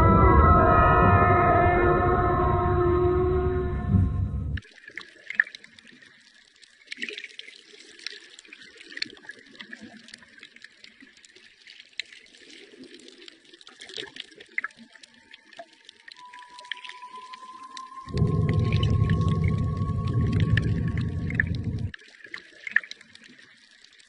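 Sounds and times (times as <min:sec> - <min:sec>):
faint held tone: 0:00.0 - 0:04.6, 0:16.2 - 0:21.9
underwater bubbling: 0:12.2 - 0:24.0.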